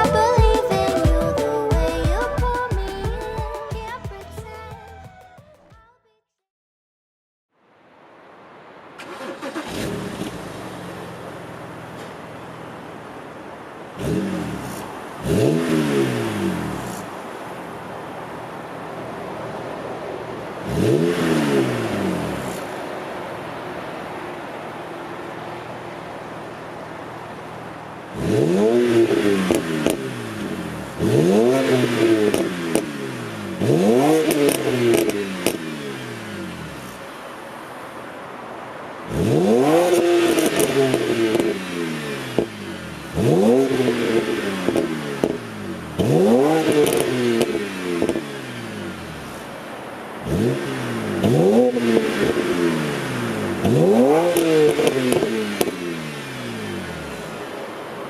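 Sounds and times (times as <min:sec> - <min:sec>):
car exhaust revving: 0:09.1 - 0:13.2, 0:13.8 - 0:37.1, 0:39.1 - 0:49.6, 0:50.2 - 0:57.5
exhaust crackles and pops: 0:28.2 - 0:35.8, 0:39.1 - 0:41.6, 0:42.2 - 0:48.6, 0:53.5 - 0:55.9.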